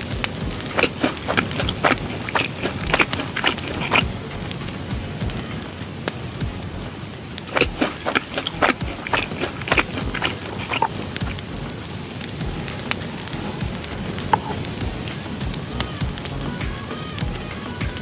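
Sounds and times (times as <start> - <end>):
campfire crackling: 0.0 - 18.0
sharp pops: 0.0 - 18.0.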